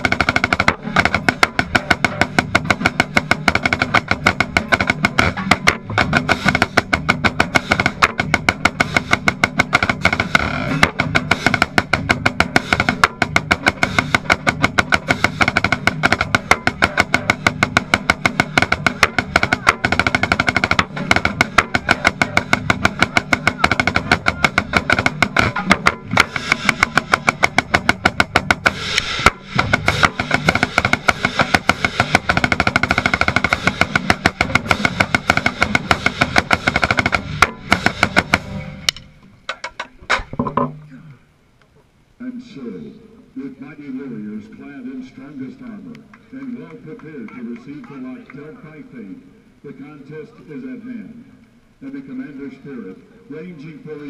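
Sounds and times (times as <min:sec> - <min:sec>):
marching snare drum: 0:00.0 - 0:38.9.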